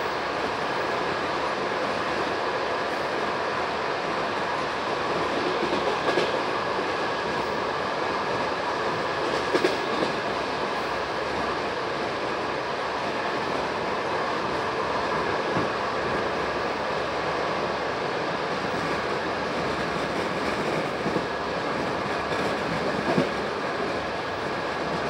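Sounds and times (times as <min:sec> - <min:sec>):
train wheels rumbling on rails: 0:00.0 - 0:25.0.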